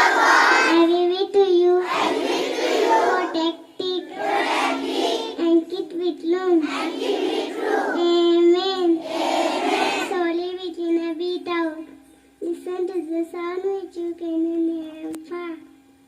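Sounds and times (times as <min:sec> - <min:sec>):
children singing in unison: 0:00.0 - 0:01.0, 0:01.6 - 0:05.5, 0:06.5 - 0:10.2.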